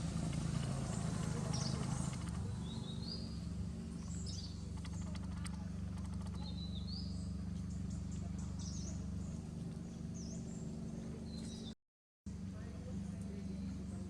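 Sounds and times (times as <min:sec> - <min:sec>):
quick run of clicks: 0:00.0 - 0:02.5, 0:04.0 - 0:06.6
birds chirping: 0:00.0 - 0:11.8
steady low hum: 0:00.0 - 0:14.0.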